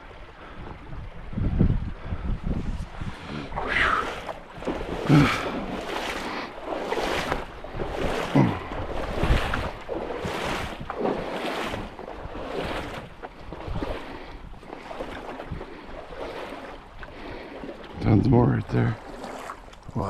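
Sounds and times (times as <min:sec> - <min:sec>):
wind buffeting microphone: 0:00.0 - 0:20.0
swishing footsteps: 0:02.6 - 0:18.0.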